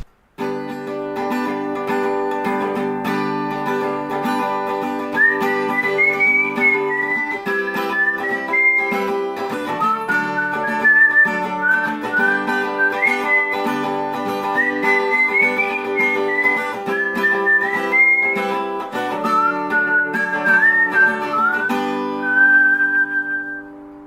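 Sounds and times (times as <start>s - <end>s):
plucked acoustic guitar: 0.0s - 24.0s
whistled melody: 5.0s - 24.0s.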